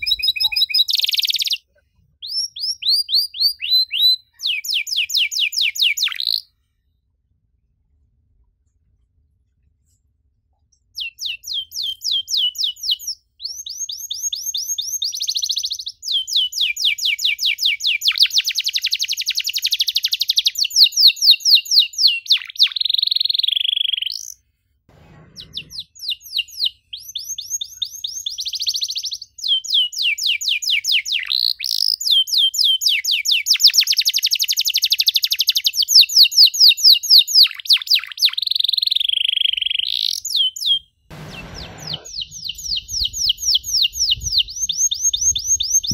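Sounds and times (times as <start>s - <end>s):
canary singing trills: 0.0s - 1.6s, 2.2s - 6.5s, 11.0s - 24.4s, 25.4s - 45.9s
low thump: 24.9s - 25.8s.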